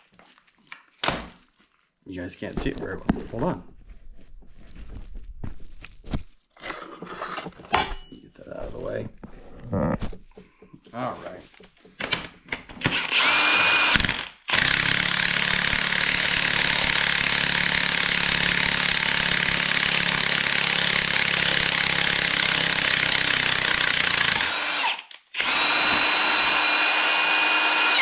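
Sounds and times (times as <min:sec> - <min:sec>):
power tool motor bursts: 0:12.8 - 0:28.0.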